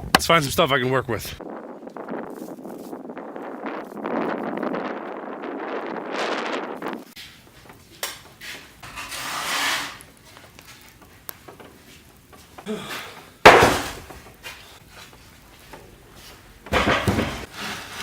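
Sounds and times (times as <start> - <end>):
wood scraping drag: 7.0 - 12.1, 13.4 - 18.0
loud sharp wooden bang: 13.4 - 14.2, 16.7 - 17.5
wooden boards knocking: 13.4 - 14.2, 16.7 - 17.5.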